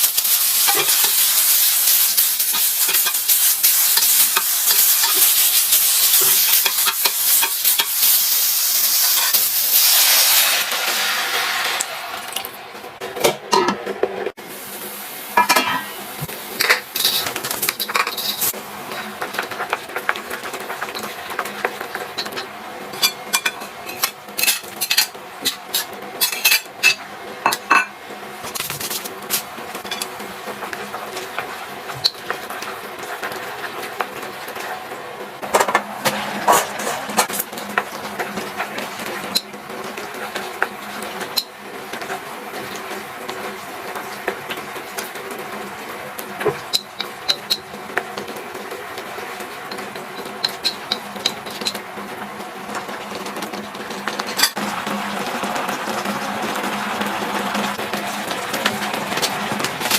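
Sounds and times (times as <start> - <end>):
utensils clinking against pots: 0.0 - 9.6, 13.2 - 14.0, 15.4 - 16.0, 16.6 - 30.2, 46.5 - 48.3, 49.7 - 51.9, 53.3 - 59.9.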